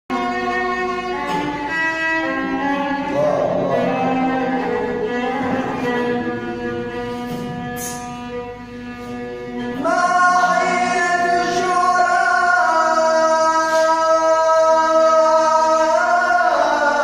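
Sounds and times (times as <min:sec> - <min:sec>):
quiet held accompaniment: 0:00.1 - 0:17.0
man singing long held note: 0:02.8 - 0:07.2, 0:09.7 - 0:17.0.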